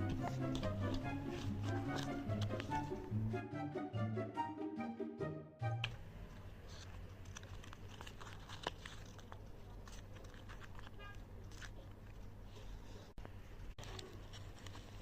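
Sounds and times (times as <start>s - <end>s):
light crinkling: 0.0s - 3.0s, 6.3s - 15.0s
music: 0.0s - 6.0s.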